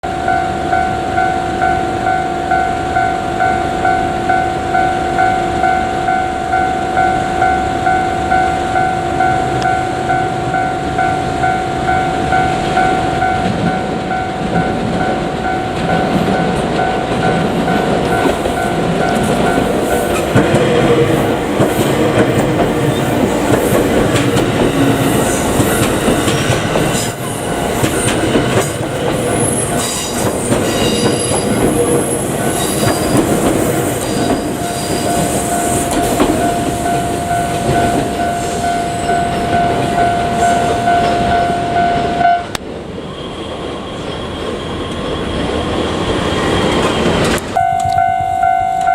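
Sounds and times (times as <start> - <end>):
level crossing alarm clanging: 0.1 - 42.6, 46.8 - 48.9
train wheels rumbling over rails: 0.1 - 48.1
wheel squeal: 24.7 - 41.4.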